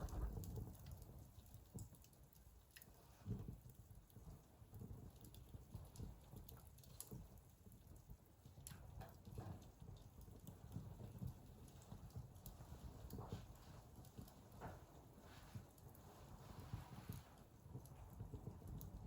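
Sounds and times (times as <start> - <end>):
wood fire crackling: 0.0 - 19.0.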